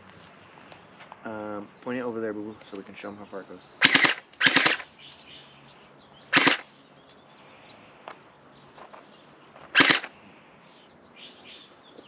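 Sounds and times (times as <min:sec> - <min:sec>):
gel blaster burst: 0:03.8 - 0:04.8, 0:06.4 - 0:06.6, 0:09.8 - 0:10.1.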